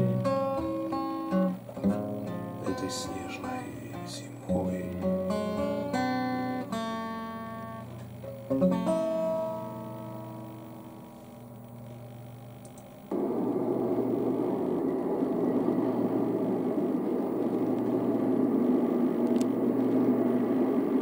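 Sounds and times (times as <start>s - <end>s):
guitar chord ringing: 0.0s - 12.1s
blizzard wind: 13.1s - 21.0s.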